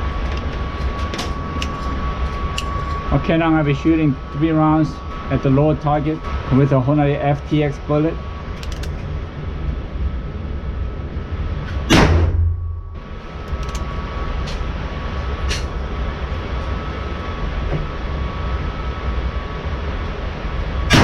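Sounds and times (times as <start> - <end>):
steady background hum: 0.0 - 21.0
revolver gunshot: 11.9 - 12.6.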